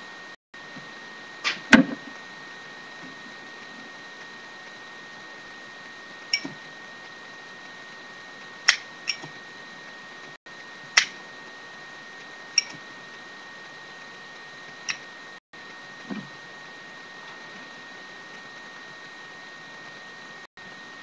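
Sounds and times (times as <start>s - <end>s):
faint high hum: 0.0s - 21.0s.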